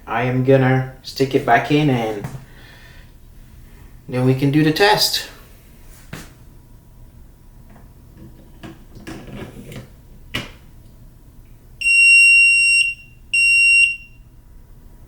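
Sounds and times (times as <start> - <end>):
long high-pitched beep: 11.8 - 14.2.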